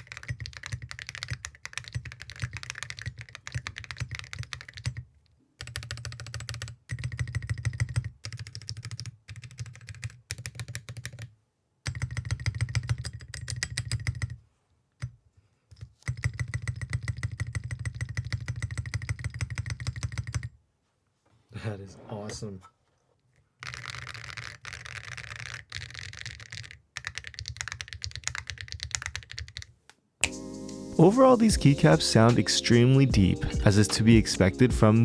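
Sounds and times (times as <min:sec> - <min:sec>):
fast typing on mechanical keyboard: 0:00.0 - 0:14.4, 0:15.7 - 0:20.5, 0:23.6 - 0:29.8.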